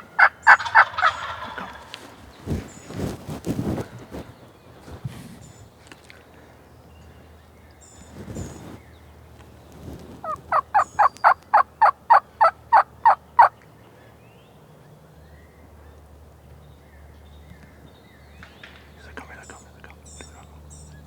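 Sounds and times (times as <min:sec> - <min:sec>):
turkey yelps: 0:00.2 - 0:02.0, 0:10.2 - 0:13.5
soft brushing rustle: 0:00.6 - 0:06.1, 0:08.0 - 0:10.6.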